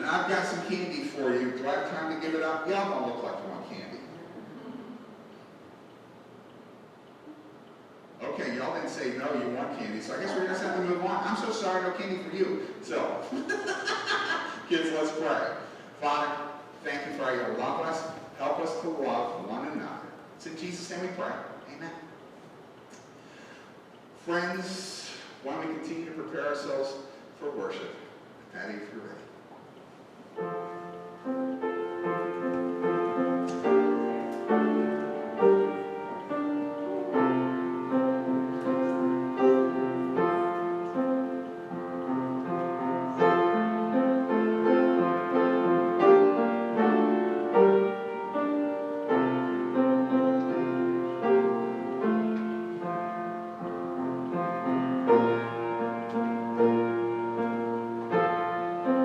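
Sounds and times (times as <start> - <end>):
solo piano music: 30.3 - 59.0.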